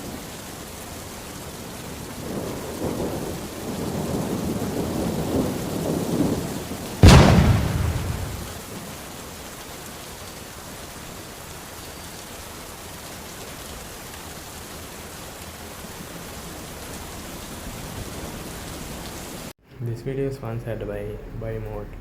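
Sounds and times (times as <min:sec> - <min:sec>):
steady rain hissing: 0:00.0 - 0:22.0
thunderclap: 0:01.9 - 0:09.0.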